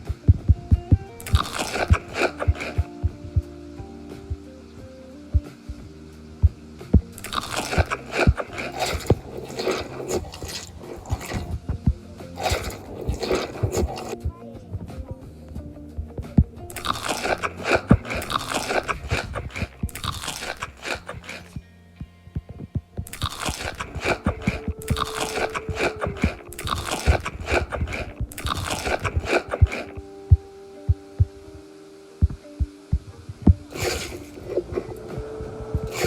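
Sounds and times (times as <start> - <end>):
person chewing food: 1.2 - 3.0, 7.0 - 11.6, 12.4 - 14.2, 16.7 - 21.6, 23.1 - 30.0, 33.6 - 35.0.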